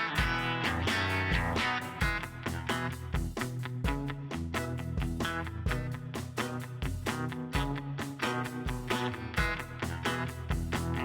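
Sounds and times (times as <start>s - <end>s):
guitar chords: 0.0s - 3.1s
steady bass line: 0.0s - 11.0s.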